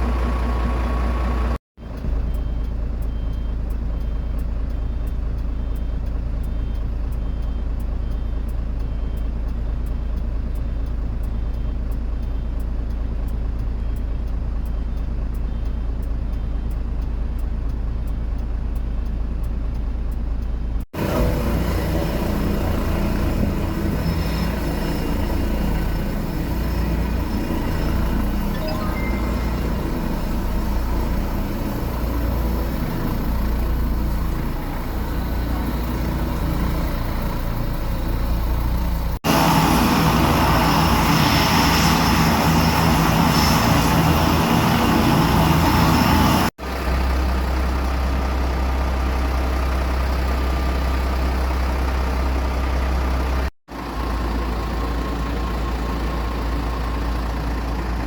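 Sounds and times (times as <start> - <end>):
aircraft engine noise: 21.0 - 46.6.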